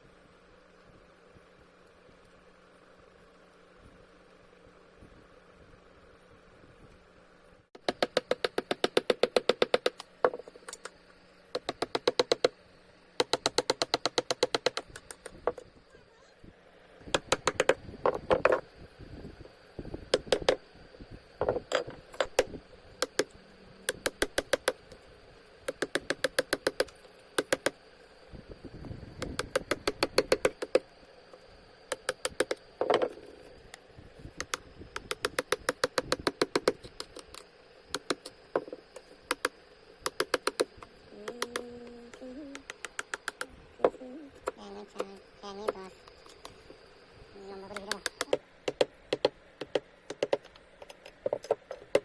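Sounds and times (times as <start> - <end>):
rapid taps on wood: 7.8 - 12.6, 13.2 - 15.7, 17.1 - 18.6, 20.1 - 20.6, 23.9 - 24.8, 25.7 - 27.8, 29.2 - 30.8, 31.9 - 33.2, 34.4 - 46.8, 47.7 - 52.0.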